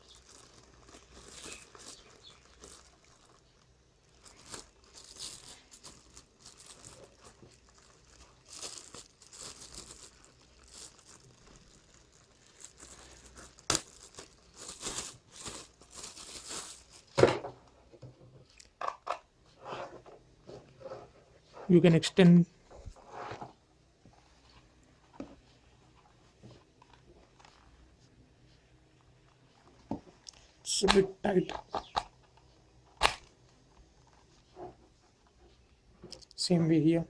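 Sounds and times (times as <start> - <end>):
plastic packaging crinkling: 0.0 - 17.2.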